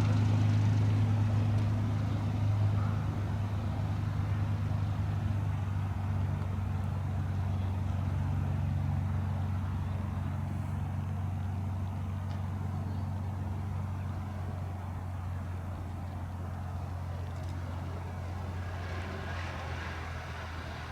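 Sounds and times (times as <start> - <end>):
aircraft engine droning: 0.0 - 20.9.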